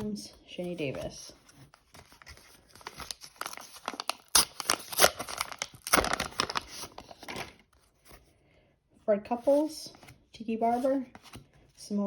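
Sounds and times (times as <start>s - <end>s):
wrapper tearing and crinkling: 2.1s - 7.6s.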